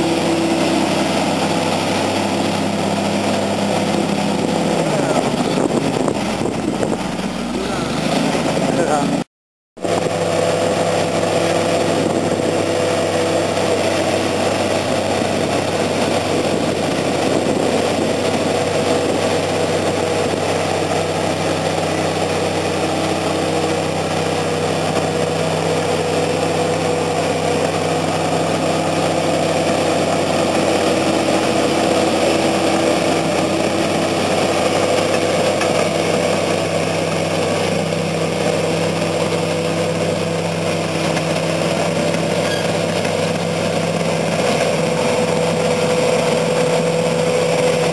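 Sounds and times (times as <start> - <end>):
diesel engine of heavy machinery: 0.0 - 47.9.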